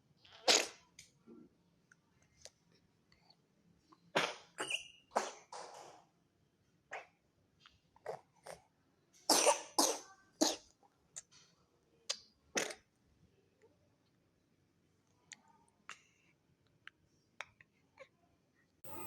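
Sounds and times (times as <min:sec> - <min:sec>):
baby coughing: 0:09.3 - 0:10.7.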